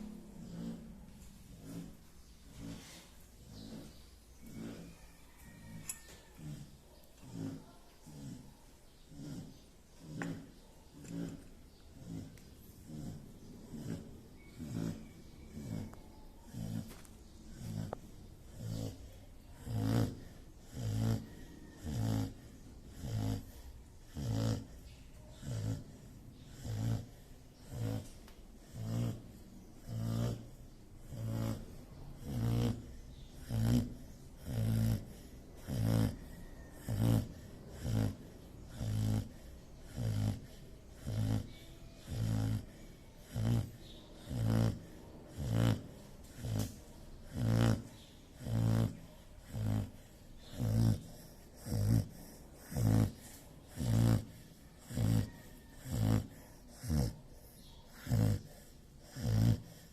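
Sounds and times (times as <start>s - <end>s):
dog snoring: 0.0s - 59.9s.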